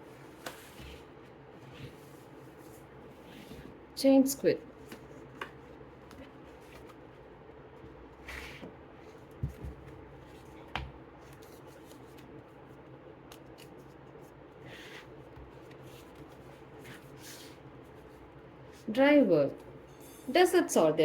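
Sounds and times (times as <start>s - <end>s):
paper pages rustling: 4.8s - 7.2s, 8.3s - 18.2s.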